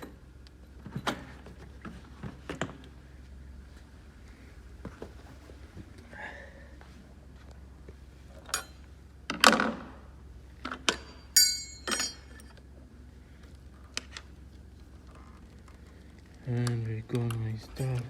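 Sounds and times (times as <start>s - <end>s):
tools and metal parts clinking: 8.4s - 8.9s, 10.6s - 12.6s, 17.1s - 18.0s.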